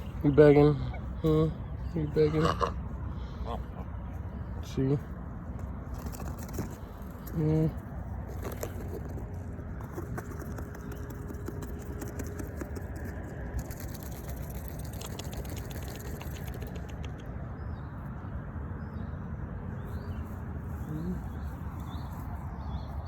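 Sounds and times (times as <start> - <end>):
steady low rumble: 0.0 - 18.0
small birds chirping: 0.0 - 23.0.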